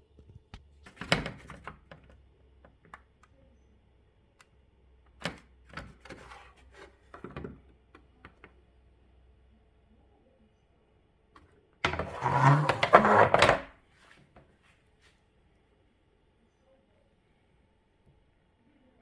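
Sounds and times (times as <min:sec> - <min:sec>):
faint low hum: 0:01.8 - 0:12.0, 0:14.7 - 0:19.0.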